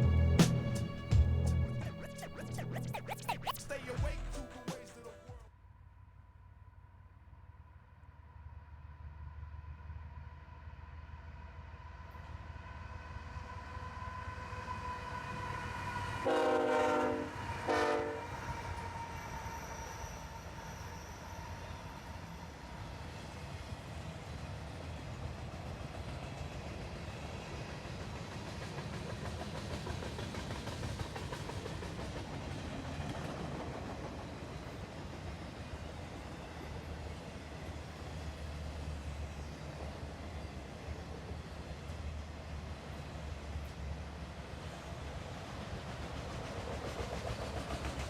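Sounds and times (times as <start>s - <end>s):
train wheels on track: 11.3s - 48.0s.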